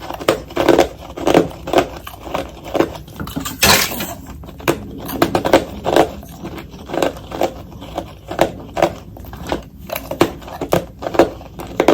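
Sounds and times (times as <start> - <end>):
person crunching ice: 0.0 - 4.6.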